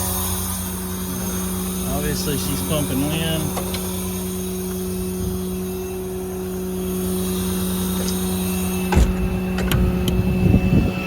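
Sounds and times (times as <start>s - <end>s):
diesel engine idling: 0.0s - 11.0s
low thumps: 8.0s - 11.0s
sharp knocks: 8.9s - 10.2s.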